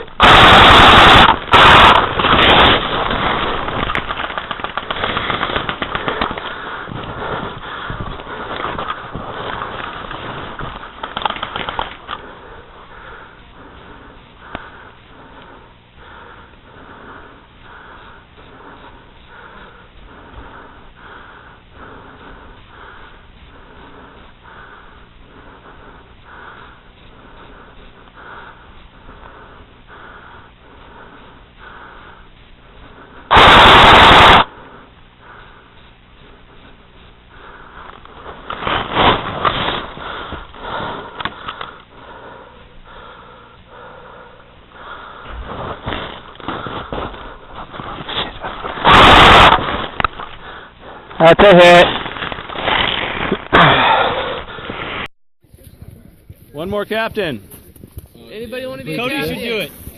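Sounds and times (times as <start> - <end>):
very loud burst: 0.0 - 12.1, 33.3 - 34.6, 37.8 - 41.2, 45.4 - 50.1, 51.2 - 55.1.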